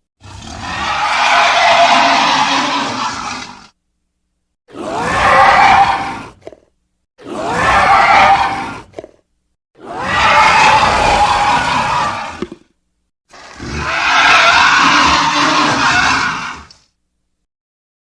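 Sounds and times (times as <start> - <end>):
dinosaur roar: 0.2 - 3.8, 4.7 - 6.6, 7.2 - 9.2, 9.8 - 12.7, 13.3 - 16.8.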